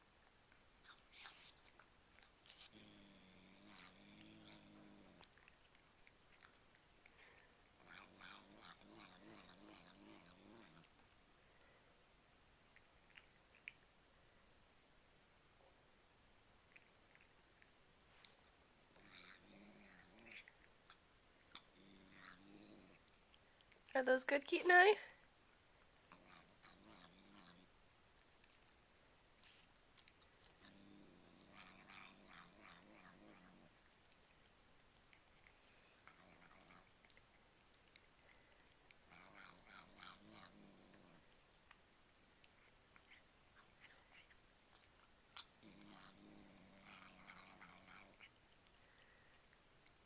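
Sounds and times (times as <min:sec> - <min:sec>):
cat crunching treats: 0:00.0 - 0:11.1, 0:12.7 - 0:13.9, 0:16.6 - 0:23.9, 0:25.2 - 0:50.0
cat growl-like vocalising: 0:02.4 - 0:05.5, 0:07.2 - 0:10.9, 0:18.9 - 0:20.6, 0:21.6 - 0:23.1, 0:26.1 - 0:27.7, 0:30.4 - 0:33.8, 0:36.0 - 0:37.2, 0:39.1 - 0:41.3, 0:43.0 - 0:48.4.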